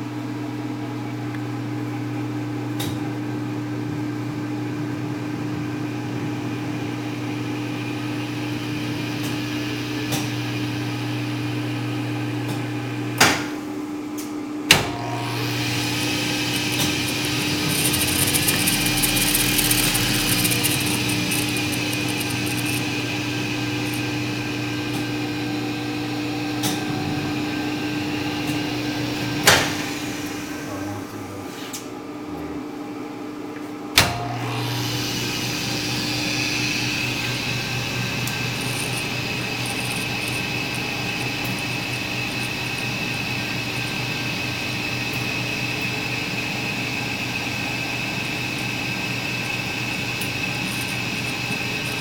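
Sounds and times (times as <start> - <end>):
phase converter hum: 14.7 - 33.4, 34.9 - 52.0
lathe running: 14.8 - 26.5, 34.5 - 52.0.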